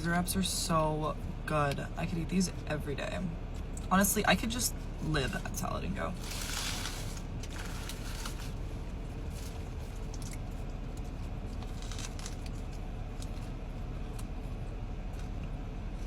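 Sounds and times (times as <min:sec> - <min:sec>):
steady low hum: 0:00.0 - 0:16.0
wrapper rustling and crinkling: 0:06.2 - 0:13.5.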